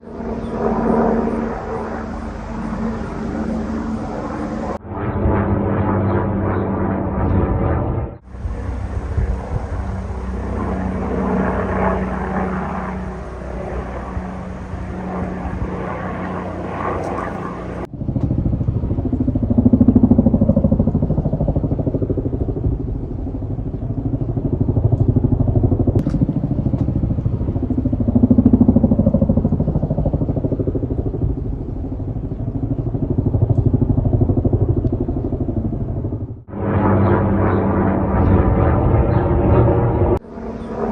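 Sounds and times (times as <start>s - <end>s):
engines pulsing rapidly: 0.0s - 40.9s.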